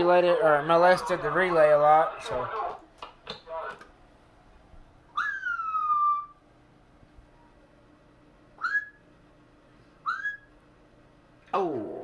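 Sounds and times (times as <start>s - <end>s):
whistled notes: 8.6s - 9.0s.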